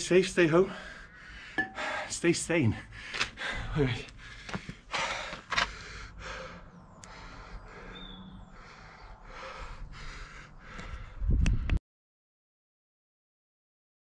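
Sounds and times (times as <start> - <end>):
person breathing close to microphone: 0.7 - 2.1, 2.8 - 11.8.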